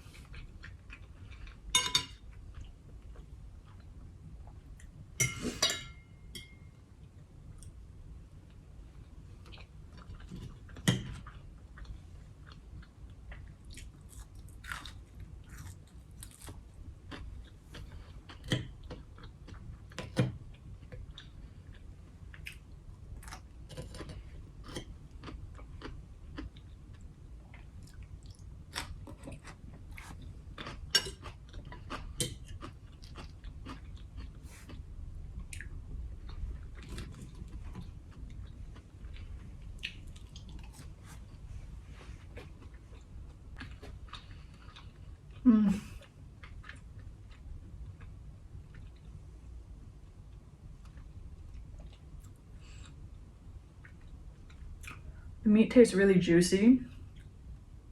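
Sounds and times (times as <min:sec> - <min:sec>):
person chewing and biting food: 0:11.7 - 0:20.0, 0:20.8 - 0:45.4.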